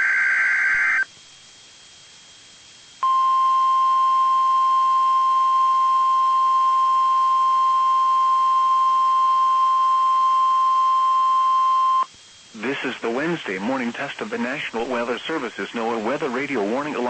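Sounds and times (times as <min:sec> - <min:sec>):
faint radio hiss: 0:00.0 - 0:17.0
steady warning alarm tone: 0:03.0 - 0:12.1.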